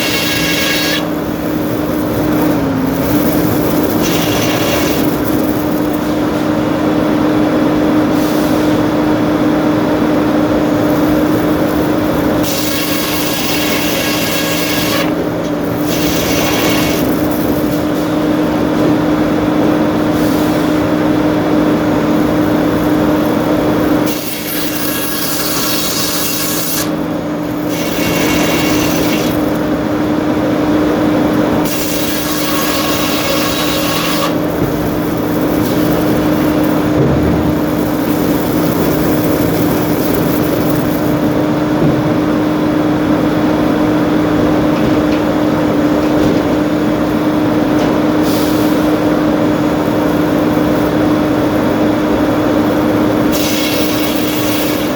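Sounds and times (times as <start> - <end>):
saw cutting through log: 0.0 - 6.8, 10.2 - 18.8, 20.0 - 41.7, 48.2 - 54.9
sawmill machinery humming: 0.0 - 54.9.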